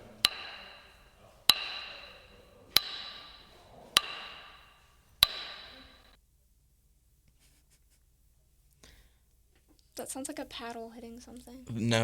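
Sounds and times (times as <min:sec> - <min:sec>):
gym weights clanking: 0:00.0 - 0:06.2.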